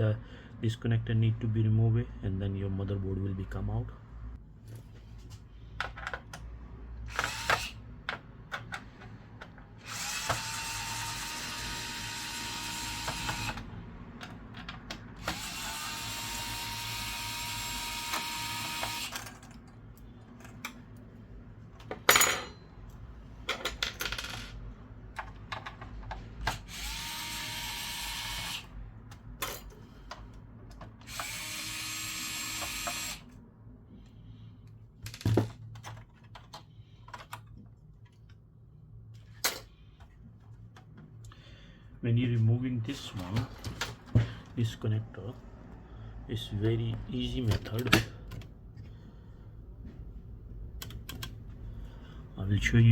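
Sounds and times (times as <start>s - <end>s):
electric screwdriver motor: 7.1s - 7.8s, 9.8s - 13.6s, 15.2s - 19.2s, 26.6s - 28.7s, 31.0s - 33.2s.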